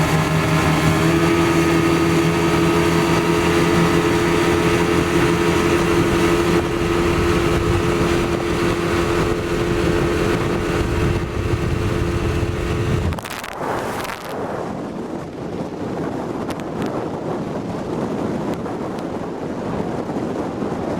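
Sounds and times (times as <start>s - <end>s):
outboard engine running: 0.0s - 13.6s
wind noise on microphone: 0.0s - 20.9s.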